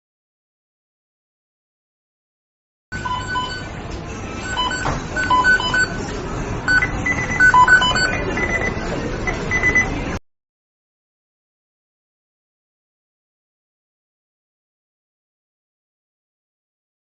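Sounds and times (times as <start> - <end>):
timer beeps: 2.9 - 3.7, 4.4 - 6.0, 6.7 - 10.0
noisy kitchen background: 2.9 - 10.2.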